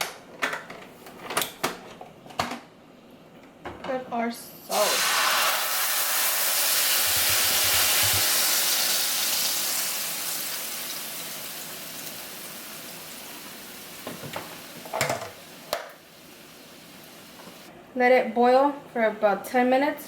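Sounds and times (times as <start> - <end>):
food sizzling in hot pan: 4.7 - 17.7.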